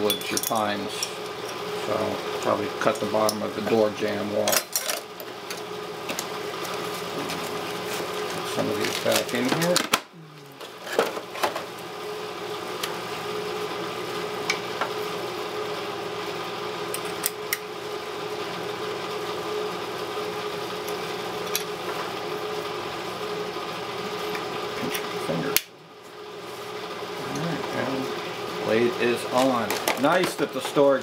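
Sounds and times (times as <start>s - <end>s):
steady mechanical hum: 0.0s - 31.0s.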